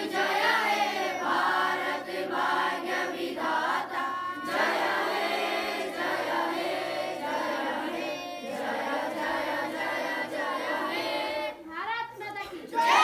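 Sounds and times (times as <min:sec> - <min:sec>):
group of voices chanting: 0:12.8 - 0:13.0.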